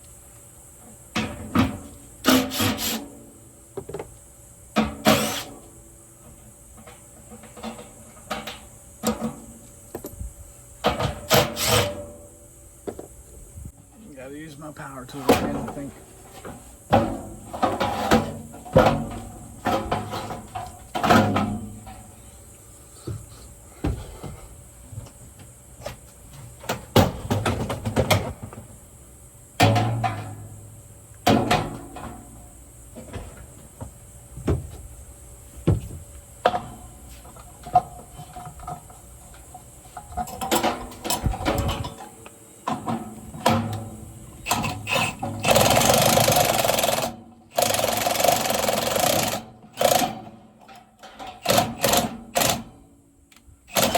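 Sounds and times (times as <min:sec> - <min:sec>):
cordless power tool: 0:44.4 - 0:50.3, 0:51.4 - 0:52.7, 0:53.7 - 0:53.9.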